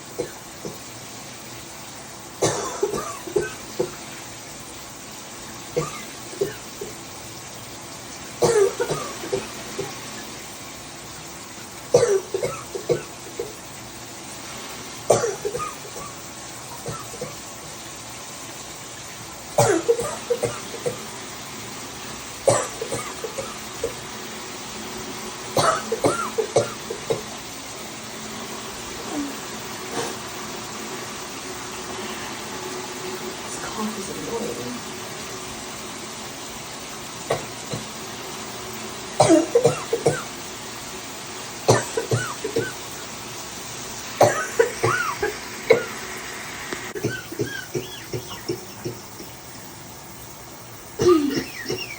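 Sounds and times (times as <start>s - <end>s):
woman coughing: 2.4s - 4.0s, 5.8s - 6.6s, 8.4s - 10.0s, 12.0s - 13.5s, 15.1s - 16.2s, 16.8s - 17.4s, 19.6s - 21.0s, 22.5s - 24.0s, 25.6s - 27.3s, 39.2s - 40.3s, 41.7s - 42.8s, 44.2s - 45.9s, 47.0s - 49.0s, 51.0s - 51.9s.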